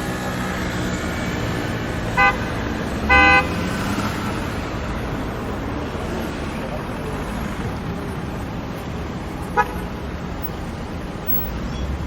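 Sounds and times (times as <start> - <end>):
passing cars rumbling: 0.0 - 12.0
car horn beep: 2.2 - 2.5, 3.1 - 3.6, 11.3 - 11.9.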